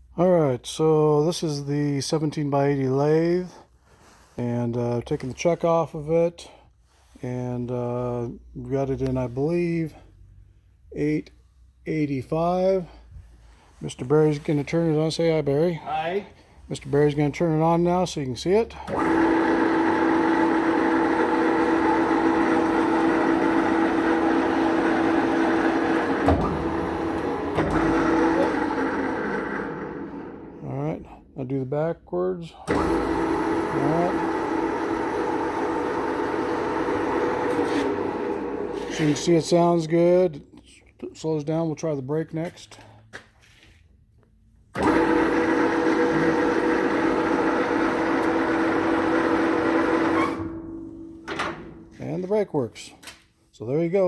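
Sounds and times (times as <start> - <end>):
lathe mechanical whine: 18.9 - 30.6, 32.7 - 39.3, 44.8 - 50.7.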